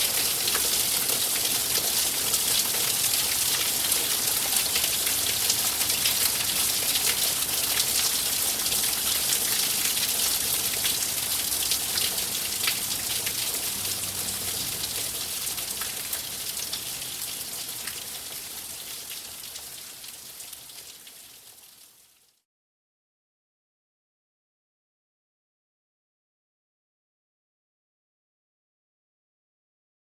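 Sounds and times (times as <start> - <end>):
steady rain hiss: 0.0 - 22.3.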